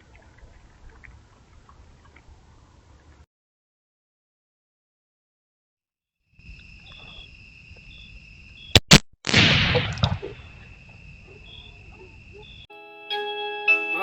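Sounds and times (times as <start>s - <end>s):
insects trilling: 6.4s - 8.8s, 10.2s - 12.7s
sharp cracks: 8.7s - 10.7s.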